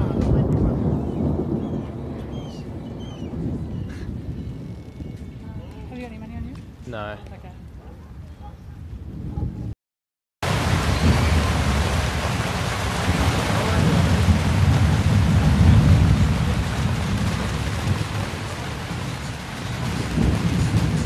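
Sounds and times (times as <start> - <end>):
deep rumble of thunder: 0.0 - 6.9, 10.4 - 21.0
steady rain hiss: 10.4 - 21.0.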